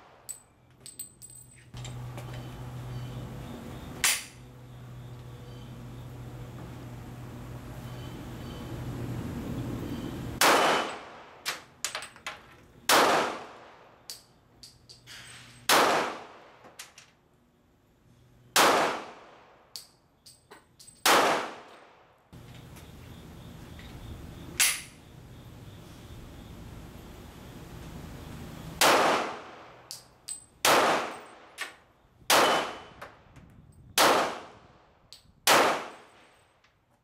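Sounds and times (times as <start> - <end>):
light metallic clinks: 0.3 - 3.2, 14.1 - 15.7, 19.8 - 21.1, 29.9 - 30.6
pistol shots: 10.4 - 11.6, 12.9 - 13.9, 15.7 - 16.6, 18.6 - 19.6, 21.0 - 22.0, 28.8 - 29.8, 30.6 - 31.7, 32.3 - 33.0, 34.0 - 34.6, 35.4 - 36.2.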